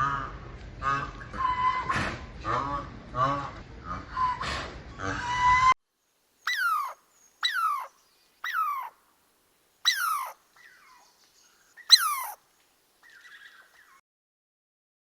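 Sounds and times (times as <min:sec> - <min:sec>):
animal high-pitched cries: 0:06.5 - 0:09.0, 0:09.9 - 0:10.9, 0:11.9 - 0:12.4.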